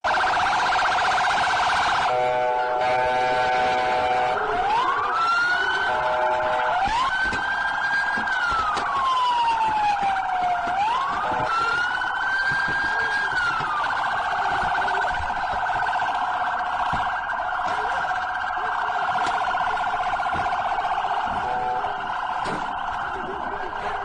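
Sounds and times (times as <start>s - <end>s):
siren wailing: 0.0s - 24.0s
siren warbling yelp: 0.0s - 24.0s.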